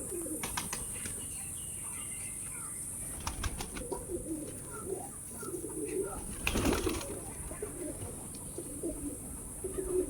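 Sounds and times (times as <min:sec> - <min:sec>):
pigeons cooing: 0:00.0 - 0:00.9, 0:02.6 - 0:10.0
pigeon wings flapping: 0:00.4 - 0:00.9, 0:03.2 - 0:03.9, 0:06.2 - 0:07.2.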